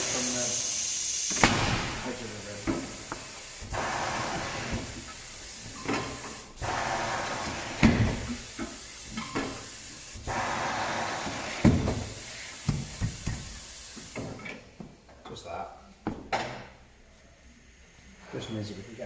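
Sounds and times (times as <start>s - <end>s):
air hissing: 0.0s - 14.5s.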